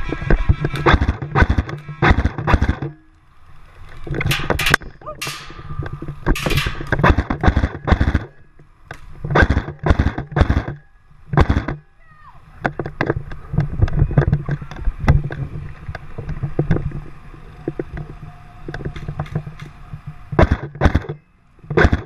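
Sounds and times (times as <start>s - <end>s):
sharp knocks and clacks: 0.2s - 3.0s, 4.1s - 8.3s, 8.9s - 11.8s, 20.4s - 22.0s.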